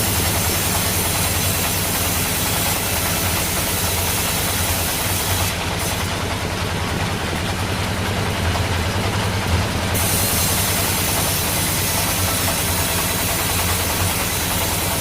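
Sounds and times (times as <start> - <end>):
sawmill machinery humming: 0.0 - 15.0
bright hiss: 10.0 - 15.0.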